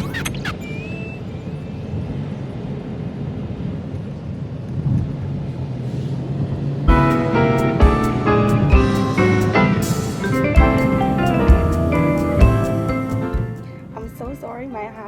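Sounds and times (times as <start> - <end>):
road traffic rumble: 1.6 - 14.2
music with pitched notes and drums: 6.9 - 13.7.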